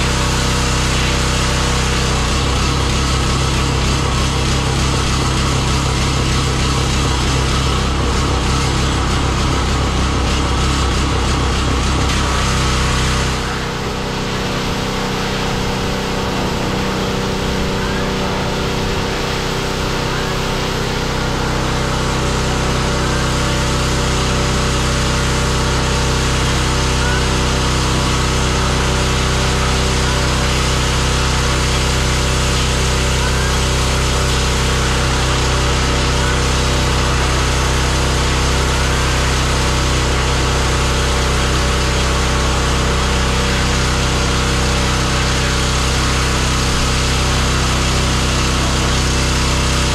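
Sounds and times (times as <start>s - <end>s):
pressure washer engine drone: 0.0s - 49.9s
water spray hissing: 12.0s - 49.9s.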